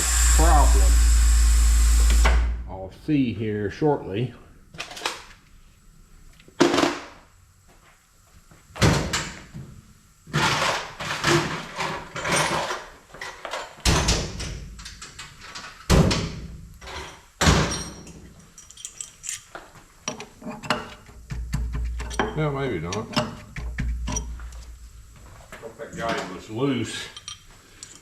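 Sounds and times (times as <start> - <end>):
tools clattering: 16.9 - 21.0, 21.9 - 24.7, 26.0 - 28.0.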